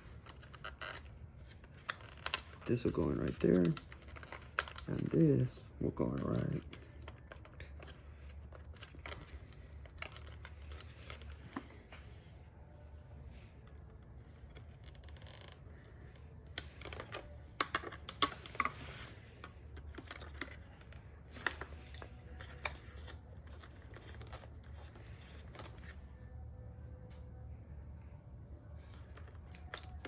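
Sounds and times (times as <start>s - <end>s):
plastic clicks and rattles: 0.2s - 5.2s, 6.1s - 12.2s, 14.5s - 26.0s
steady low hum: 4.8s - 30.0s.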